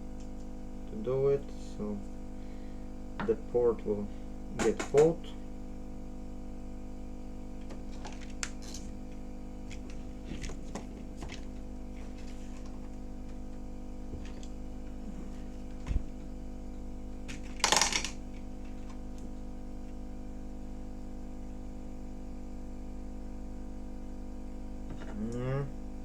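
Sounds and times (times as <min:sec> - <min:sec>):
hot-air station humming: 0:00.0 - 0:21.8, 0:24.4 - 0:26.0
tools tapping on board: 0:04.6 - 0:05.1.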